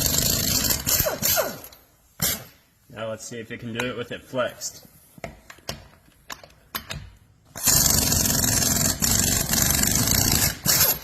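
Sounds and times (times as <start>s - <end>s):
impact wrench hammering: 7.6s - 11.0s.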